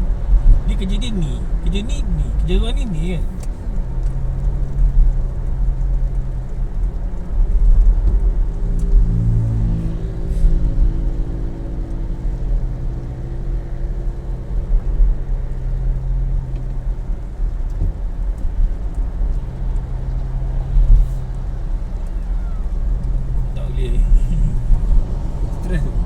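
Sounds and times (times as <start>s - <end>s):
road and engine rumble: 0.0s - 26.0s.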